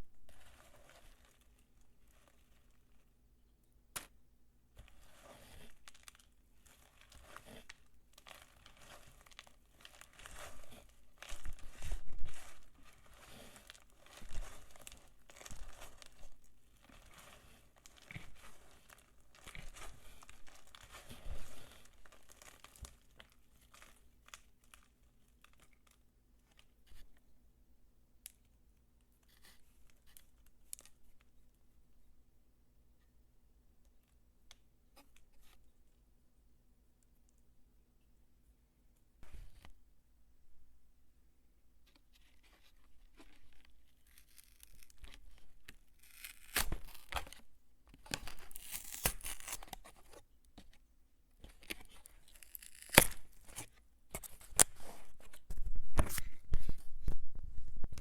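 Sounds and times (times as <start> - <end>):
soap peelings crunching: 43.1 - 47.4, 48.0 - 50.2, 51.6 - 54.7.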